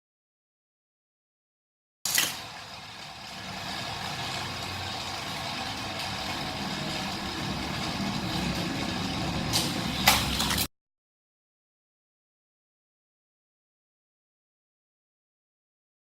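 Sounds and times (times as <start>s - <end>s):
toy motor wheels whirring: 2.1s - 10.4s.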